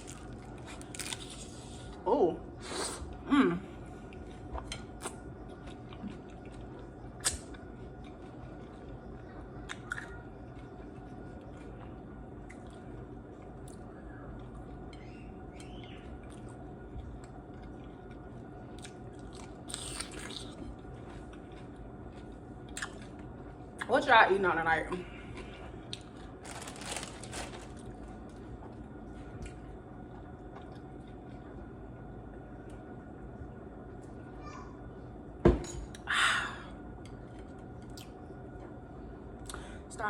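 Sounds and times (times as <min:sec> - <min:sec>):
person chewing crunchy food: 0:00.0 - 0:01.9, 0:04.1 - 0:23.8, 0:25.2 - 0:31.7
steady low hum: 0:00.0 - 0:40.0.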